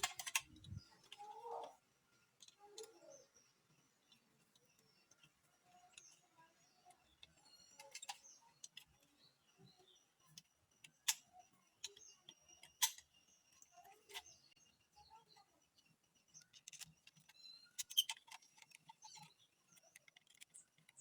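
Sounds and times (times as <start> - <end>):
sharp plastic clicks: 0.0 - 1.2.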